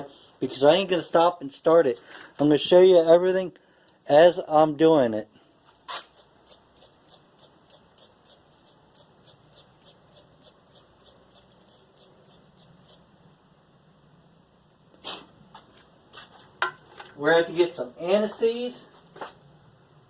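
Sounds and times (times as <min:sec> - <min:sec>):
brush scrubbing spark plug: 0:05.9 - 0:13.1.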